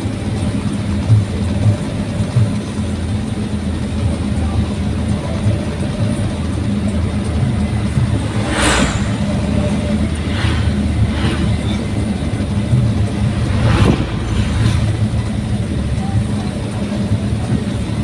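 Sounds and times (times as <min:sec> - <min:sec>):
pickup engine drone: 0:00.0 - 0:18.0
brief whooshes: 0:07.8 - 0:11.8.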